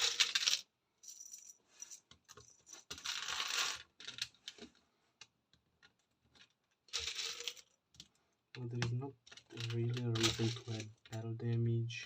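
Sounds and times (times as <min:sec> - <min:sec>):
plastic pieces clicking and clattering: 0:00.0 - 0:00.7, 0:02.2 - 0:04.7, 0:05.8 - 0:11.2.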